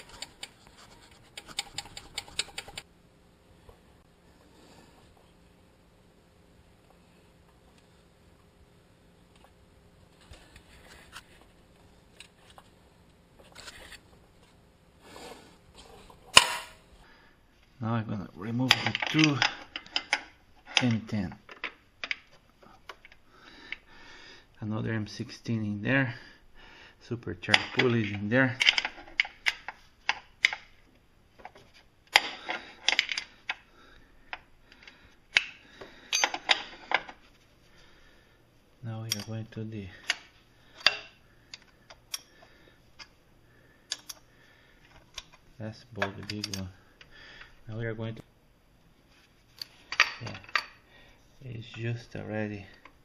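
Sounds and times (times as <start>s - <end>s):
metal tools clicking and scraping: 0.0s - 2.8s, 35.3s - 37.2s, 39.0s - 39.4s, 43.9s - 44.2s, 46.0s - 46.7s.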